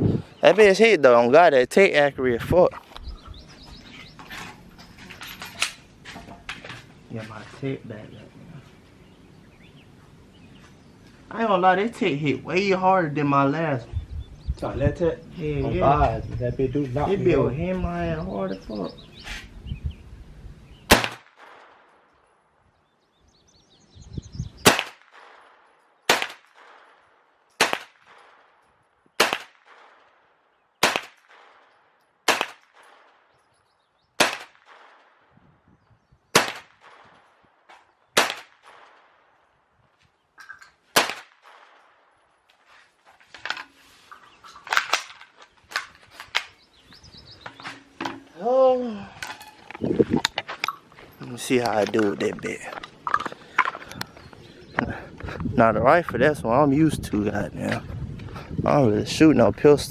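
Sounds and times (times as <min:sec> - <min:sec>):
gunshots with echo: 0:20.9 - 0:22.0, 0:24.6 - 0:27.0, 0:27.6 - 0:28.6, 0:29.2 - 0:30.2, 0:30.8 - 0:33.2, 0:34.2 - 0:35.1, 0:36.3 - 0:37.3, 0:38.2 - 0:39.2, 0:40.9 - 0:41.9.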